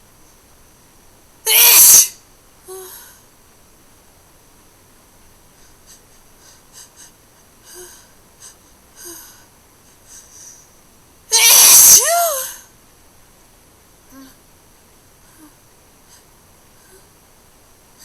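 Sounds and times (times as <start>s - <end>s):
person sneezing loudly: 1.5s - 2.2s, 11.3s - 12.6s
person breathing softly: 2.7s - 3.3s, 5.5s - 10.8s, 14.1s - 14.4s, 15.2s - 17.2s.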